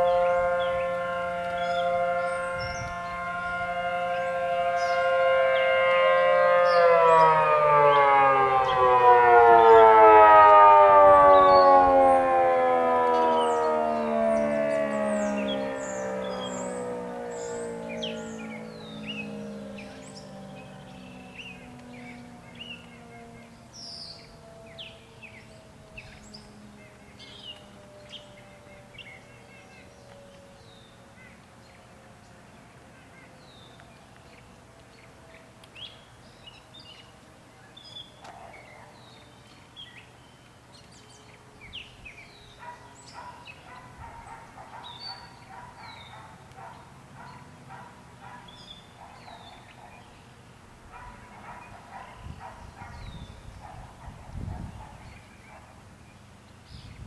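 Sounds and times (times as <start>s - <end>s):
warning siren winding down: 0.0s - 32.9s
birds chirping: 0.0s - 57.0s
dog barking: 38.3s - 39.0s, 42.6s - 50.1s, 50.9s - 55.8s.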